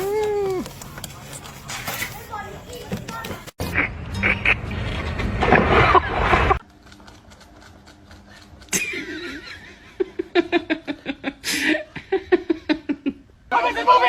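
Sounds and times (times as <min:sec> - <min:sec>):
person laughing: 0:08.7 - 0:13.2.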